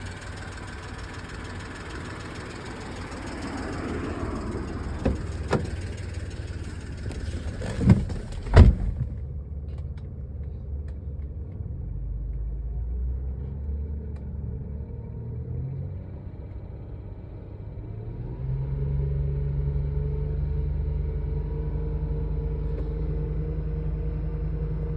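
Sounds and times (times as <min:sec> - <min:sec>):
engine ticking: 0:00.0 - 0:11.6
car engine running: 0:00.0 - 0:18.2
sharp engine knocks: 0:04.7 - 0:09.2.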